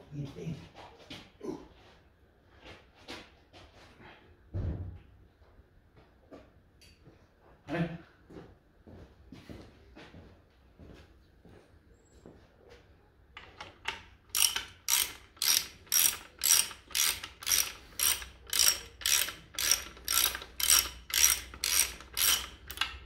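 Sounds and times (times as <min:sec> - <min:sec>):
ratchet wrench clicking: 0:13.5 - 0:23.0.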